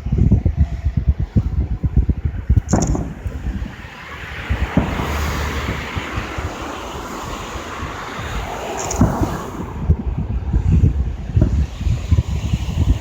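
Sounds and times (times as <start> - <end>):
fireworks booming: 1.0 - 7.0, 8.2 - 13.0
long steady hiss: 3.3 - 9.9, 10.5 - 13.0.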